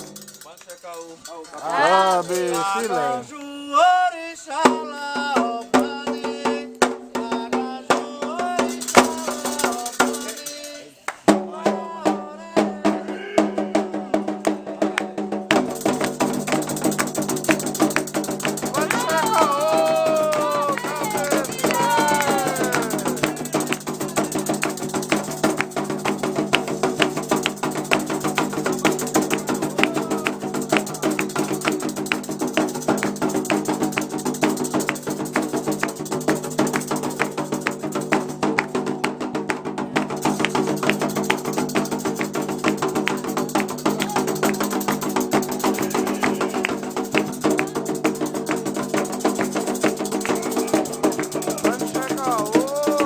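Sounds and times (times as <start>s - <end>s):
hand drums playing fast rhythm: 0.0s - 3.3s, 4.5s - 53.0s.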